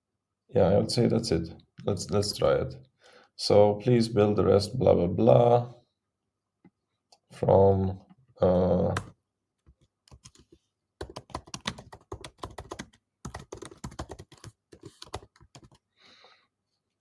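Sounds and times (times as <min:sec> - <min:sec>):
typing on computer keyboard: 0:09.7 - 0:15.8.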